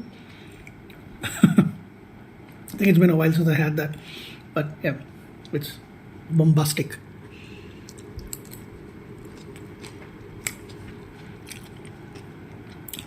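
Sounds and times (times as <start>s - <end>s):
chewing: 7.8s - 13.0s.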